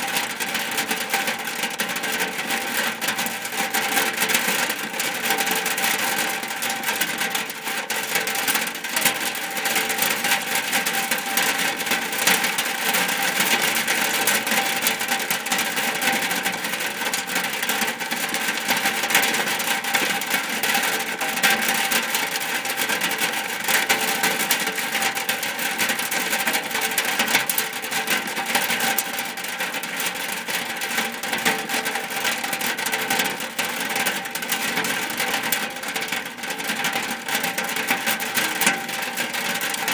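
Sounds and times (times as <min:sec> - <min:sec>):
rain on a roof: 0:00.0 - 0:39.9.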